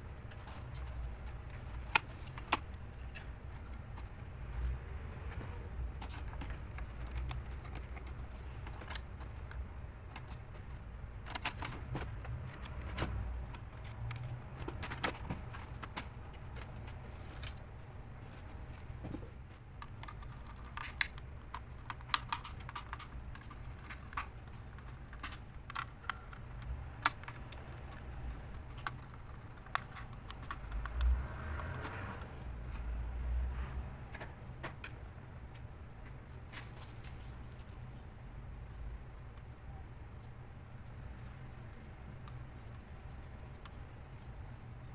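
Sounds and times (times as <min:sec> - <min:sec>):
steady low hum: 0:00.0 - 0:44.9
clicks and taps of laptop parts: 0:05.3 - 0:17.6, 0:19.8 - 0:32.4.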